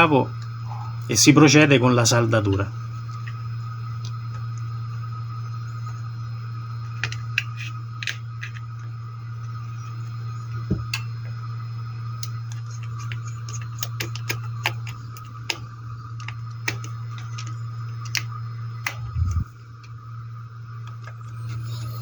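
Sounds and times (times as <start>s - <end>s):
steady low hum: 0.0s - 22.0s
hand tools and wires clicking: 12.2s - 20.0s.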